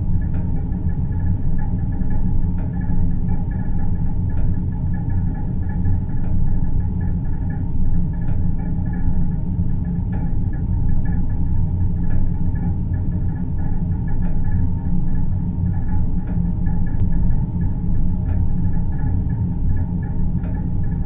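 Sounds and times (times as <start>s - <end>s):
low ambient drone rumble: 0.0s - 21.0s.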